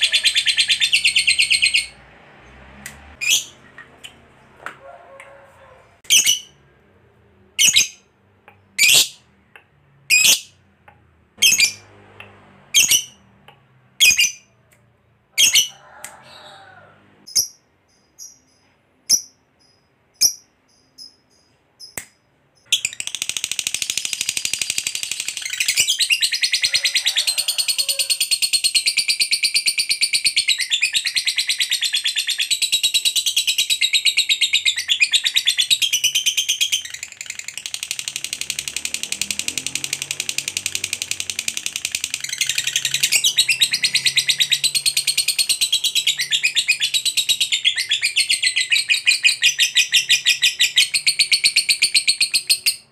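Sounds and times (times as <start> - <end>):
lovebird chirping: 0.0 - 2.0, 3.2 - 3.8, 6.0 - 6.7, 7.4 - 10.6, 11.4 - 11.9, 12.7 - 13.3, 14.0 - 14.6, 17.3 - 26.9, 28.5 - 52.9.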